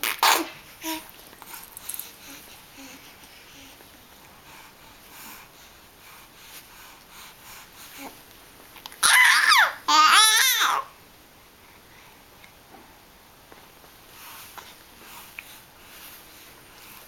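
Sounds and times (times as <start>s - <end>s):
child squealing: 9.0s - 10.9s.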